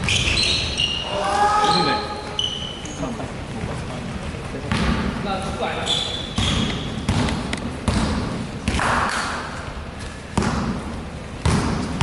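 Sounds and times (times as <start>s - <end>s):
high shoe squeak: 0.0s - 3.2s, 5.8s - 7.1s
basketball bouncing on court: 4.7s - 5.1s, 6.3s - 9.1s, 10.3s - 12.0s.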